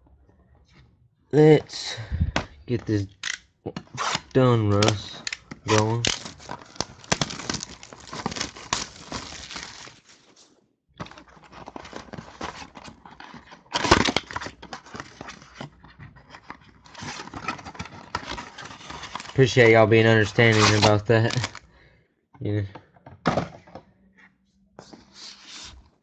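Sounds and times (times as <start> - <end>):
plastic wrappers crinkling: 4.8 - 10.4, 17.0 - 21.7.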